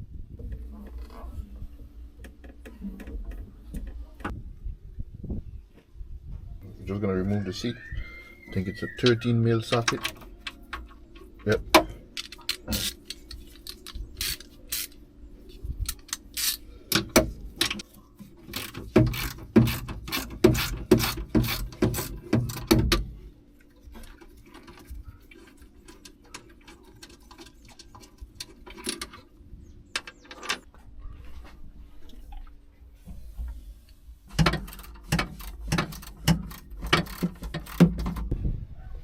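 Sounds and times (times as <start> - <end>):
ratchet wrench clicking: 12.2 - 15.0, 15.8 - 17.8, 18.5 - 22.8, 34.4 - 38.2.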